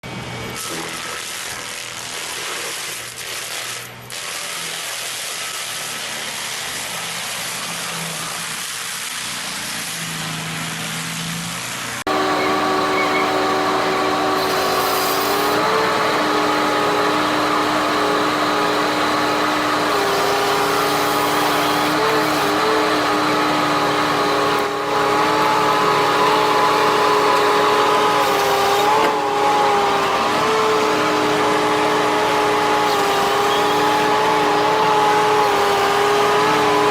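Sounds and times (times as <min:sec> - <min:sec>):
machine engine running: 0:10.3 - 0:36.9.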